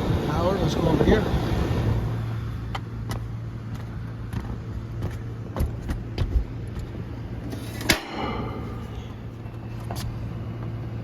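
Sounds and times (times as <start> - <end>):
machinery humming: 6.4 - 11.0.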